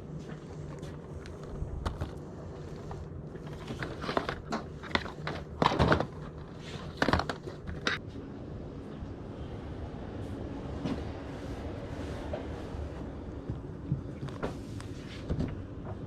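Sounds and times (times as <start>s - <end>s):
objects clicking and knocking: 3.4s - 8.0s.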